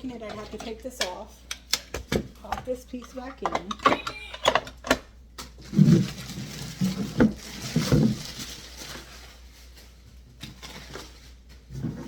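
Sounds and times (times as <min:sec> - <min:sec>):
rustling and scraping: 0:05.6 - 0:12.0.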